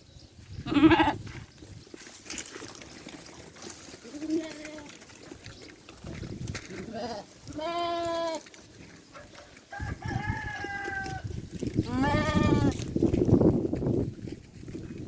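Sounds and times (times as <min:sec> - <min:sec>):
sheep bleating: 0:00.6 - 0:01.2, 0:04.0 - 0:04.9, 0:06.8 - 0:08.5, 0:11.8 - 0:12.8.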